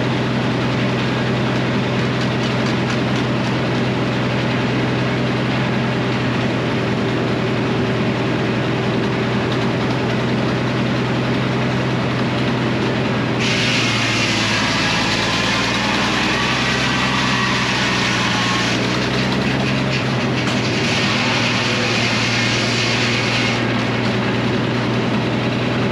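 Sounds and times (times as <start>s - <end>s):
sawmill engine hum: 0.0s - 25.9s
saw blade cutting log: 0.7s - 4.1s, 13.4s - 25.0s.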